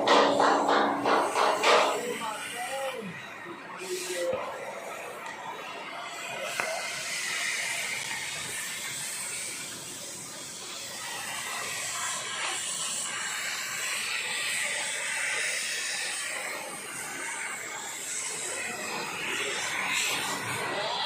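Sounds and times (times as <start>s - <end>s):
hydraulic baling press hissing: 0.0s - 2.2s.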